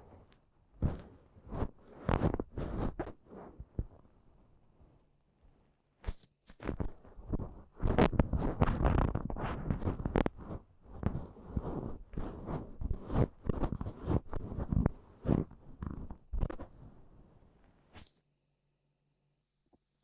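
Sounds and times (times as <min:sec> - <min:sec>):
ear pick brushing in ear: 0:07.9 - 0:16.8.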